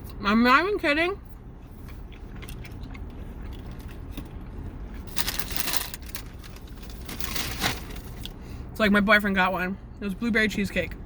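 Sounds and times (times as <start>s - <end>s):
low steady rumble: 0.0s - 11.0s
paper packaging crinkling: 5.1s - 8.3s.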